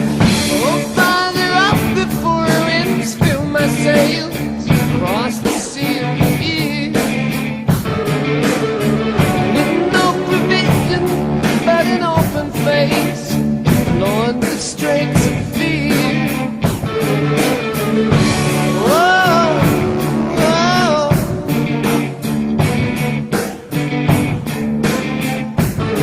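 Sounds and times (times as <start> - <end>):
lead electric guitar bending notes: 0.0 - 26.0
slow rock music: 0.0 - 26.0.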